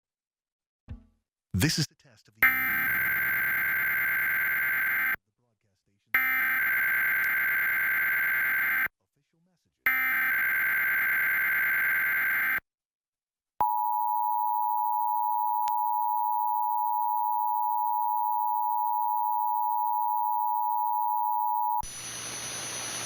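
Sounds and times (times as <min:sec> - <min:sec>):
harsh buzzing digital warble: 0:02.4 - 0:05.2, 0:06.2 - 0:08.9, 0:09.9 - 0:12.6
steady two-tone alert tone: 0:02.4 - 0:05.2, 0:06.2 - 0:08.9, 0:09.9 - 0:12.6, 0:13.6 - 0:21.8
steady hiss: 0:21.8 - 0:23.0.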